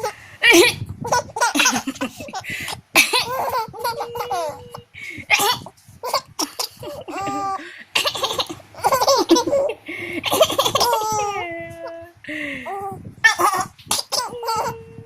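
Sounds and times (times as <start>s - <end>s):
baby giggling: 0.0s - 15.0s
woman coughing: 5.3s - 5.7s, 13.3s - 14.7s.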